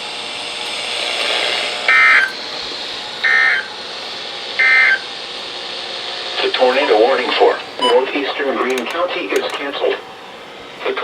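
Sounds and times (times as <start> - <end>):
radio receiver hiss: 0.4 - 11.0
digital data tone bursts: 7.8 - 8.2.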